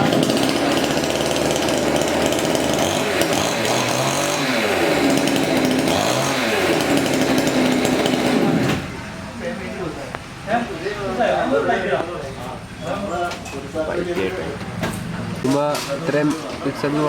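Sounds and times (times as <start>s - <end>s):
chainsaw cutting: 0.0s - 9.1s.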